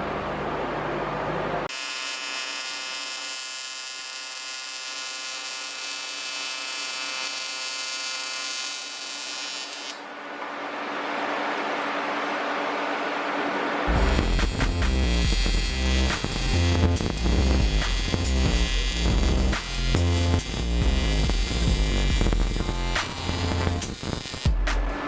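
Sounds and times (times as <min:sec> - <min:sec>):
welder arc buzzing: 0:01.7 - 0:10.1, 0:13.9 - 0:25.0.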